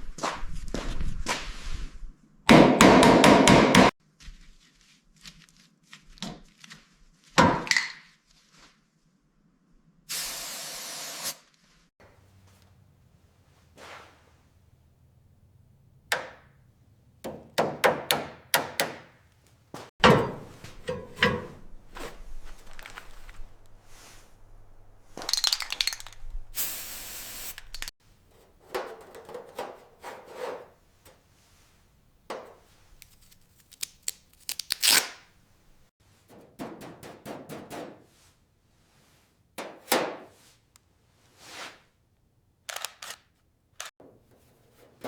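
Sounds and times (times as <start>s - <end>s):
hiss: 10.1s - 11.4s, 26.6s - 27.9s
sharp knocks: 17.2s - 19.2s, 19.8s - 21.4s
scraping: 19.3s - 26.5s, 28.1s - 33.8s.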